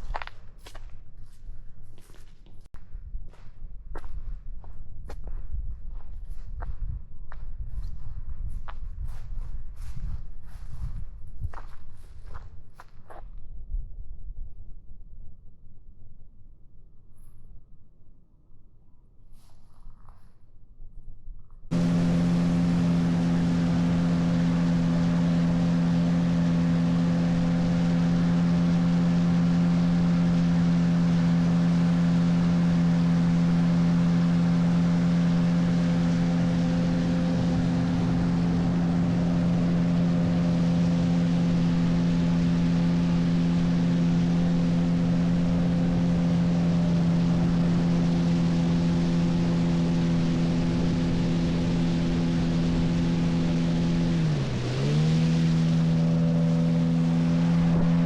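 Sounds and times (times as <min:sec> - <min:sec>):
outboard engine droning: 0:21.7 - 0:58.0.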